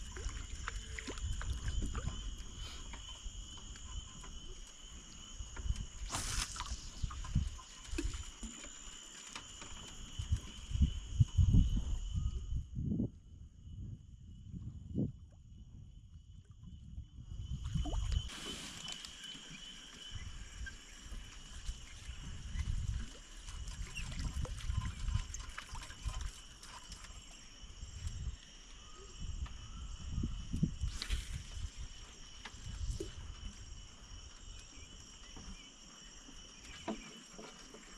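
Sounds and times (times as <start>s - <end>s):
insects shrilling: 6.0s - 9.2s.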